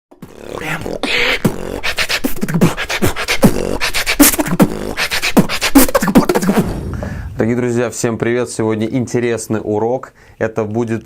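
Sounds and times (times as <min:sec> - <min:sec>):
beatboxing: 0:00.1 - 0:07.4.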